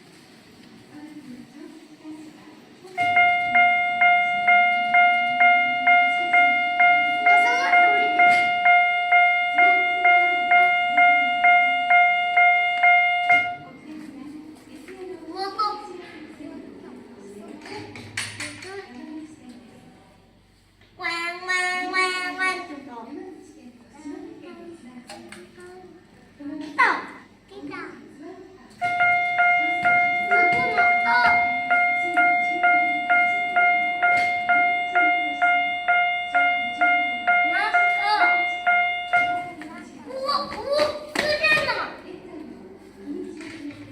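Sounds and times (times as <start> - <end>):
level crossing warning bell ringing: 3.0 - 13.8, 28.8 - 39.9.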